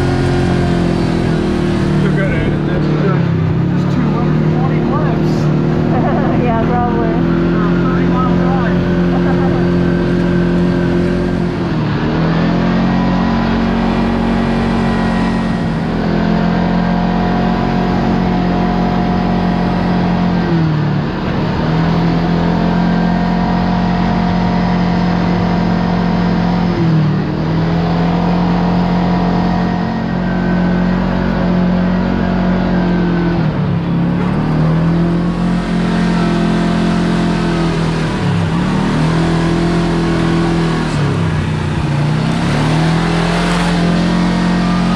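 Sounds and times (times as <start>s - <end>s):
vehicle engine pulling steadily: 0.0s - 44.9s.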